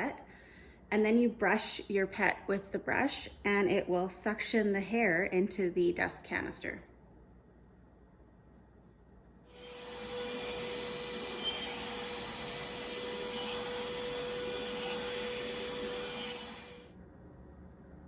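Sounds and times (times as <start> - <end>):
vacuum cleaner whining: 9.5 - 16.9.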